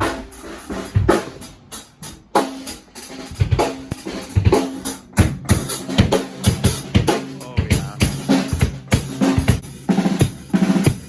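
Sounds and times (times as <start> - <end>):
snare drum: 2.4 - 11.0
kick drum: 5.2 - 9.6.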